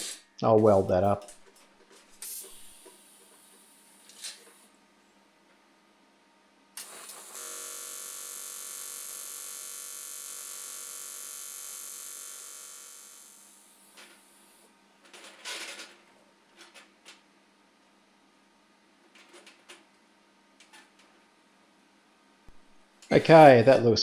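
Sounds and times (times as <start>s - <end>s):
welding arc crackle and buzz: 2.2s - 4.6s, 6.8s - 14.7s.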